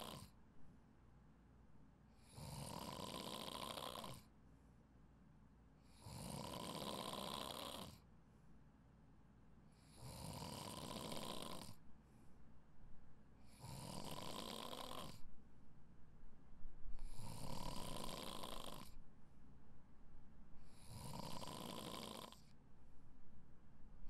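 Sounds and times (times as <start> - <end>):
person snoring: 0.0 - 0.3, 2.2 - 4.3, 5.9 - 8.0, 9.9 - 11.8, 13.5 - 15.2, 17.0 - 19.0, 20.7 - 22.5.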